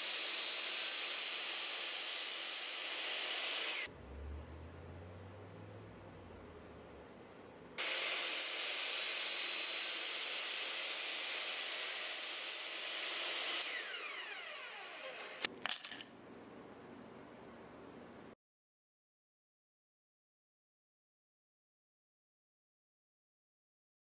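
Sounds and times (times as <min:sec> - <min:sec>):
power tool whining: 0:09.9 - 0:15.5.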